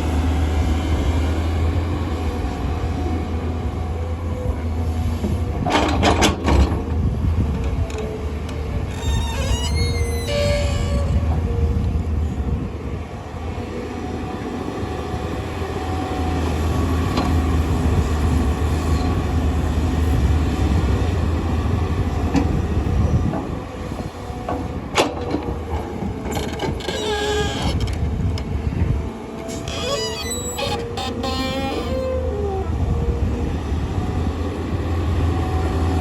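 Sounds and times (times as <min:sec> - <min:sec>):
excavator diesel engine rumbling: 0:00.0 - 0:36.0
metallic squeals and clanks: 0:08.9 - 0:11.4, 0:26.3 - 0:28.0, 0:29.5 - 0:32.6.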